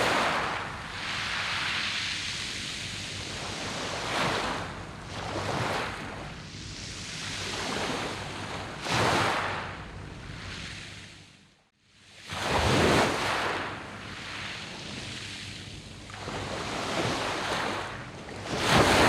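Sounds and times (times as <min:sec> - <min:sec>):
waves washing over pebbles: 0:00.0 - 0:06.0, 0:07.3 - 0:09.7, 0:16.2 - 0:19.0.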